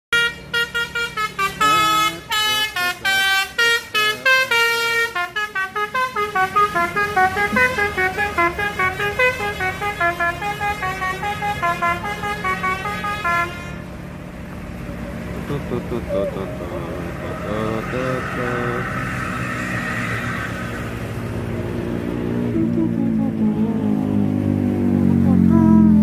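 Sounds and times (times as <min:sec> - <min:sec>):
bus horn playing a tune: 0:00.1 - 0:14.1, 0:22.4 - 0:23.9, 0:25.2 - 0:26.0.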